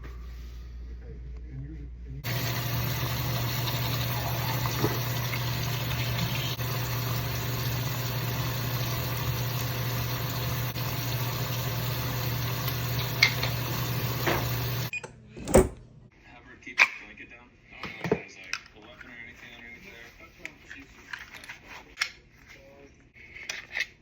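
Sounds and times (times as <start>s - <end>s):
low mechanical hum: 0.0s - 16.1s.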